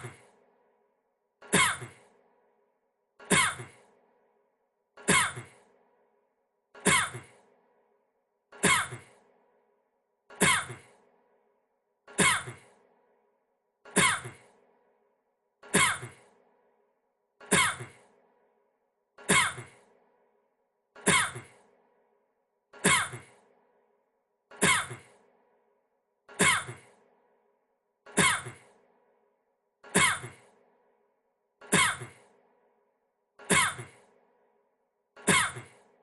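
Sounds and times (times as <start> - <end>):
man coughing: 17.4 - 18.0, 26.4 - 26.9, 35.3 - 35.7.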